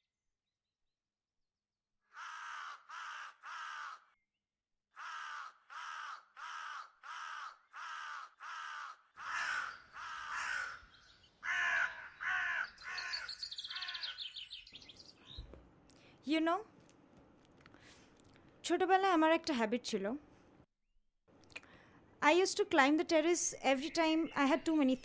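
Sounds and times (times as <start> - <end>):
crow cawing: 2.1 - 4.2, 4.9 - 14.4.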